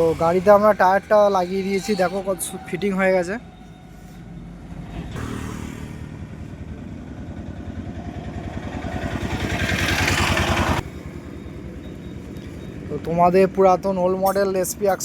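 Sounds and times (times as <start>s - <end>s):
motorcycle engine running: 5.2s - 12.3s.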